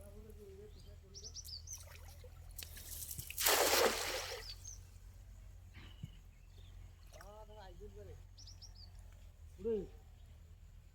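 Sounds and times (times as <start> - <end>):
bird chirps: 0.6 - 2.2, 4.3 - 4.9, 5.7 - 9.2
water splashing and pouring: 2.8 - 4.5.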